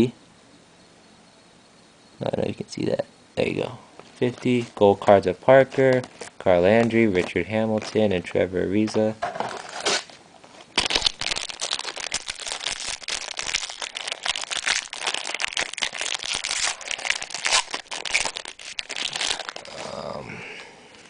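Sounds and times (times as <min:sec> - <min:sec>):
wrapper crinkling and crackling: 0:04.2 - 0:08.1, 0:09.5 - 0:20.0.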